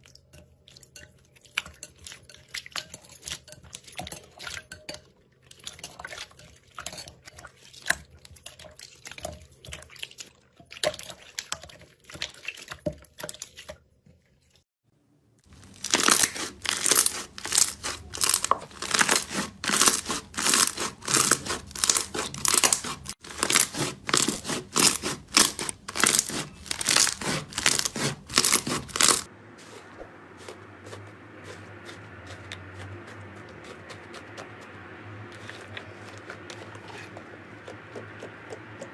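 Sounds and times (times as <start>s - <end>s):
slime crackling and popping: 15.5s - 29.3s.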